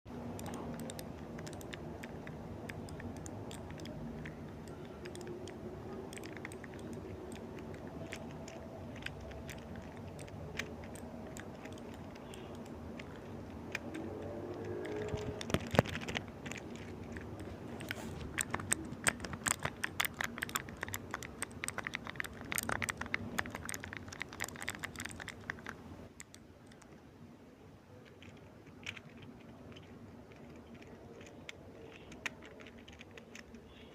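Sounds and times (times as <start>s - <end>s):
low background hum: 0.1s - 33.9s
small clicks and taps: 0.2s - 27.0s.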